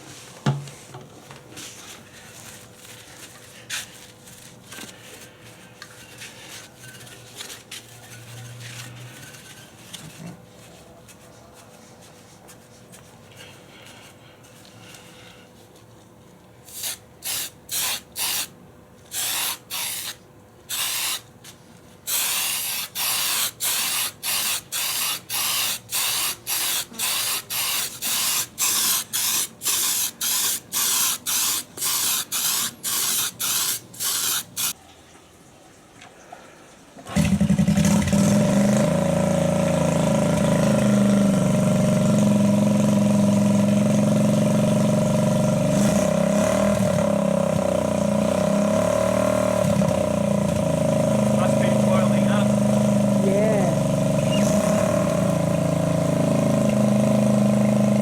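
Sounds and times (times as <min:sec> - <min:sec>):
aerosol spray can hissing: 0:16.7 - 0:18.5, 0:19.1 - 0:21.3, 0:22.1 - 0:34.8
motorcycle engine running: 0:37.2 - 0:58.0.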